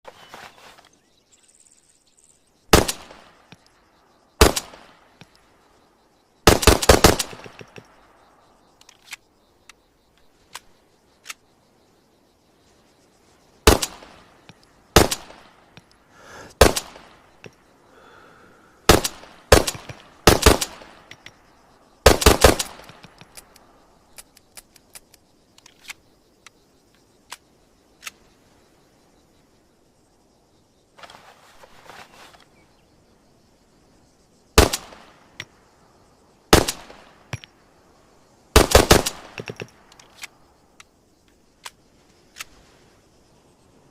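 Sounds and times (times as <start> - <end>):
pistol shots echoing: 6.4 - 7.6, 18.9 - 21.0, 38.6 - 39.6.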